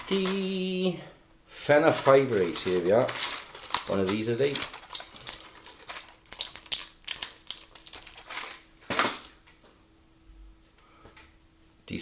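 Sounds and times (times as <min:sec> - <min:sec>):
blister pack crinkling and clicks: 0:02.1 - 0:08.6.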